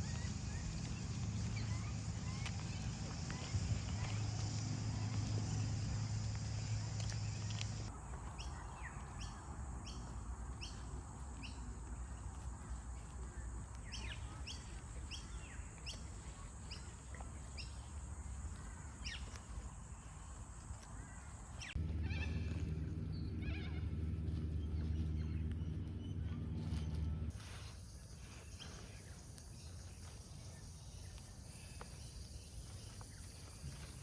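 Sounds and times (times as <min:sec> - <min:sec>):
low rumble: 0:00.0 - 0:08.1, 0:21.7 - 0:27.3
birds chirping: 0:00.0 - 0:34.0.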